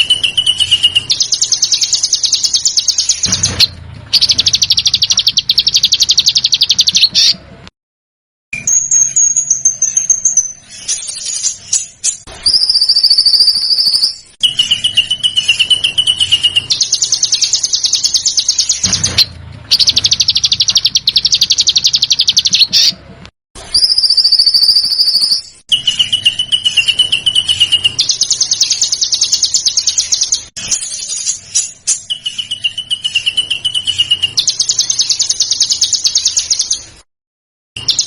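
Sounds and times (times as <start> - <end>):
songbirds rattling trills: 0.0 - 7.4, 8.6 - 23.0, 23.7 - 37.0.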